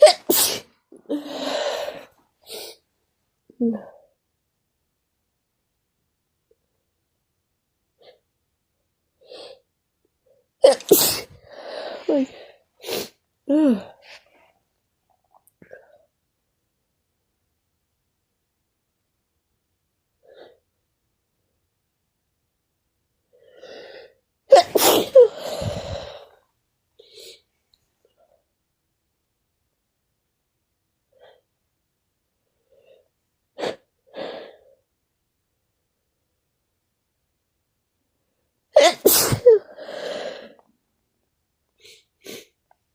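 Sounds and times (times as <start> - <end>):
person sneezing: 0.0 - 2.8, 10.6 - 11.4, 24.5 - 26.3, 38.8 - 40.2
person sniffing: 0.0 - 2.8, 10.7 - 14.2, 23.6 - 26.4, 38.8 - 40.6, 41.8 - 42.6.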